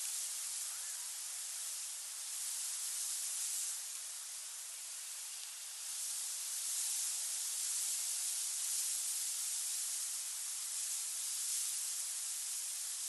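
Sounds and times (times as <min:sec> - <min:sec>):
wind-driven sand hissing: 0:00.0 - 0:13.0.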